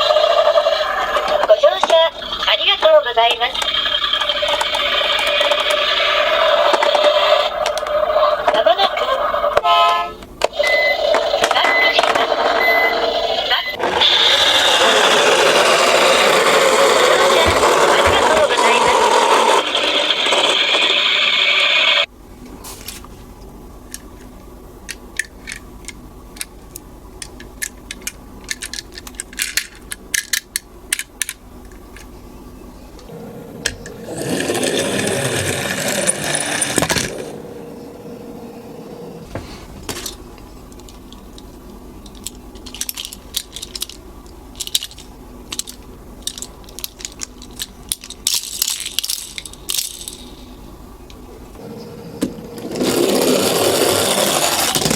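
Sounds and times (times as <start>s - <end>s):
toy cars clicking and clattering: 3.5s - 8.9s, 11.1s - 22.1s, 24.9s - 26.5s, 27.2s - 32.1s, 34.1s - 37.3s, 39.9s - 50.5s, 52.6s - 54.9s.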